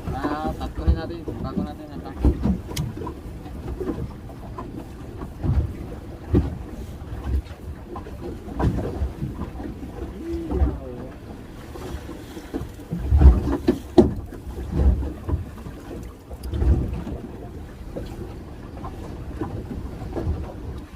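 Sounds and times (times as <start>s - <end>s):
waves slapping boat hull: 0.0s - 20.9s
wind buffeting microphone: 0.0s - 20.9s.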